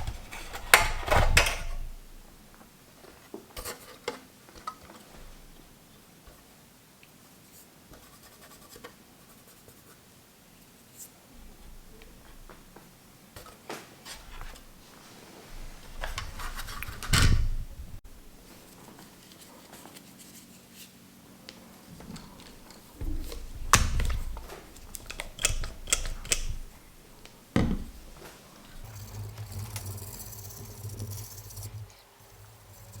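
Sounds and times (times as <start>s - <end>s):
clicks and taps of hands working: 21.5s - 28.3s
heavy thumps: 21.9s - 29.0s.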